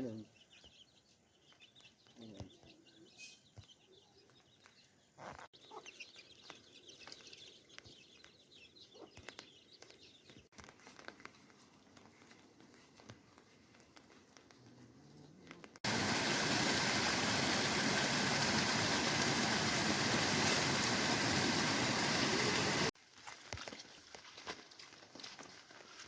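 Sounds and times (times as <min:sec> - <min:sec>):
faint chickens clucking: 0:05.2 - 0:07.2.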